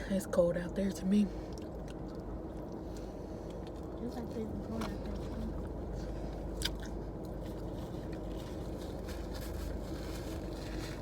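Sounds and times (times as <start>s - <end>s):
low hum inside a car: 0.0s - 11.0s
person chewing food: 1.4s - 4.1s, 5.1s - 11.0s.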